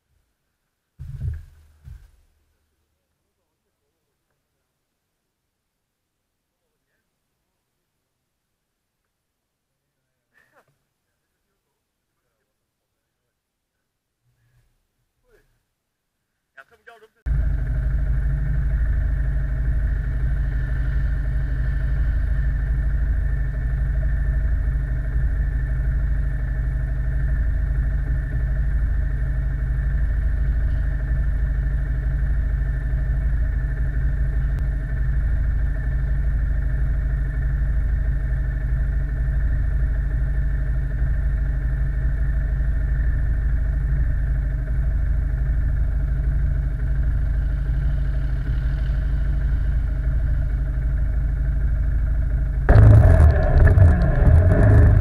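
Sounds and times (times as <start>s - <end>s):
quad engine running: 17.3s - 55.0s.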